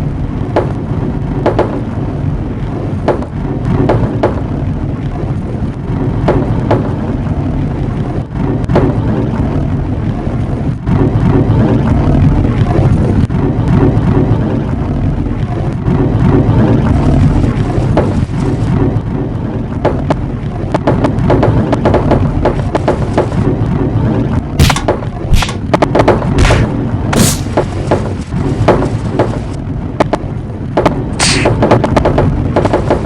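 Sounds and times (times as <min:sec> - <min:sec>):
sharp marble clacks: 0:31.2 - 0:32.0.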